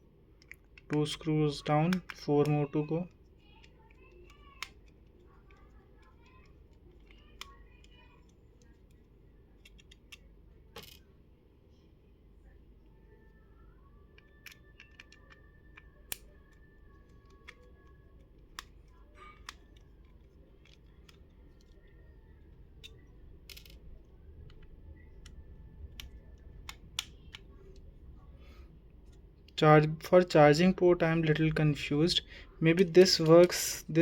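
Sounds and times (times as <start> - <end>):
screwdriver clicking on metal parts: 9.6 - 10.2.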